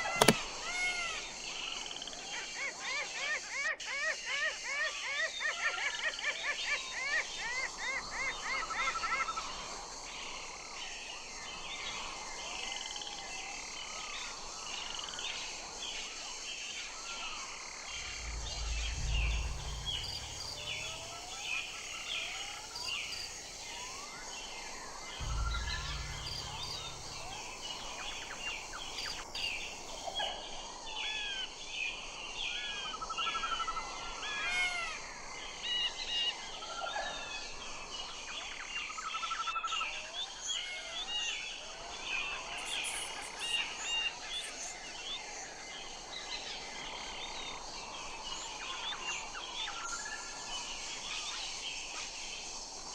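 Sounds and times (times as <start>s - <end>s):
low rumble: 17.9s - 30.2s
steady hiss: 18.0s - 30.3s.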